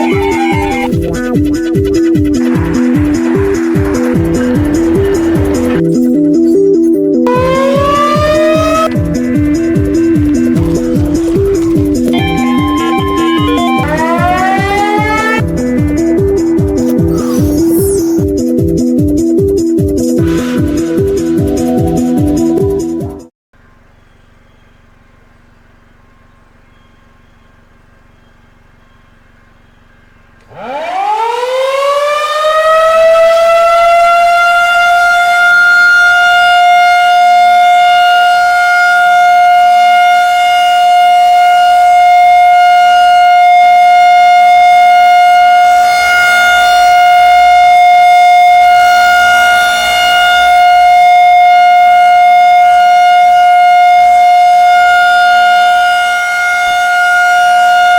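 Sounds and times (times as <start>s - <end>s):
outdoor warning siren: 0.0s - 16.4s, 30.4s - 57.9s.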